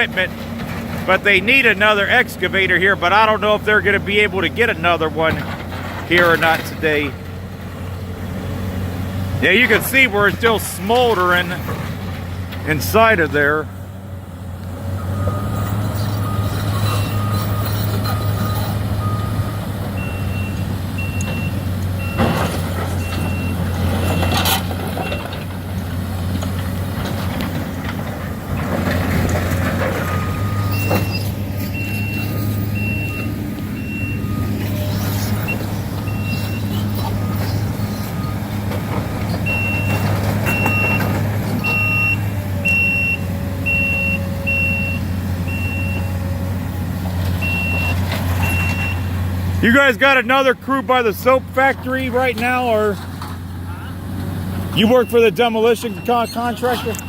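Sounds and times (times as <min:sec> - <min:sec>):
diesel machinery droning: 0:00.0 - 0:57.0
backup alarms beeping: 0:15.0 - 0:25.4, 0:30.0 - 0:46.4, 0:47.4 - 0:50.4, 0:54.8 - 0:57.0.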